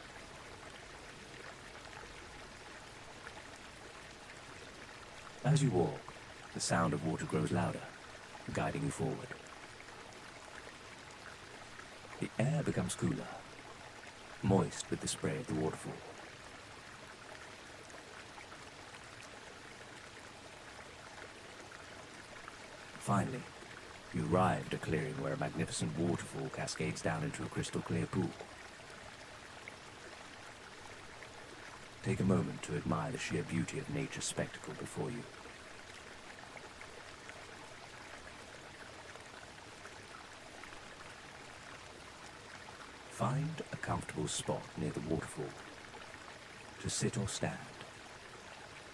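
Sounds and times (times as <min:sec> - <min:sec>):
running water: 0:00.0 - 0:48.9.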